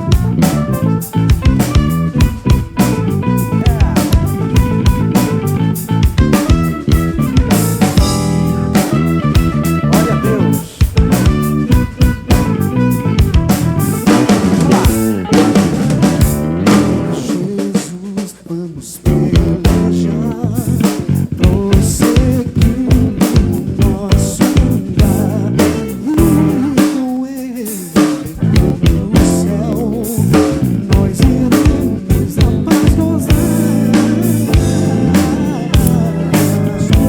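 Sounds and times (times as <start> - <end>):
snare and bass drum beat: 0.0 - 18.4, 19.1 - 20.0, 20.7 - 37.0
live soul band playing: 0.0 - 37.0.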